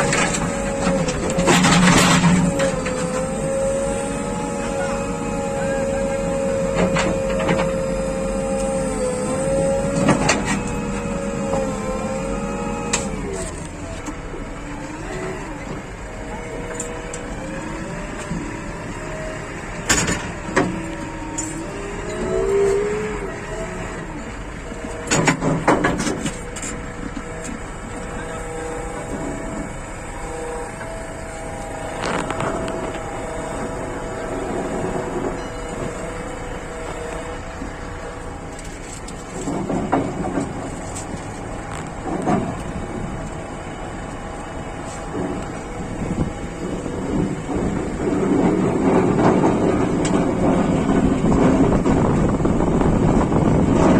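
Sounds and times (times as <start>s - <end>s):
scraping clatter: 0.0s - 4.5s, 24.9s - 53.9s
backhoe engine whine and rumble: 0.0s - 53.9s.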